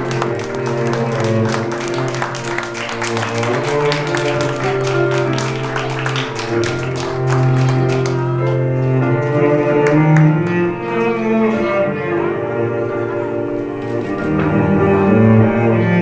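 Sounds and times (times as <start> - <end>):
people clapping: 0.0 - 10.9
slow cello-led string music: 0.0 - 16.0.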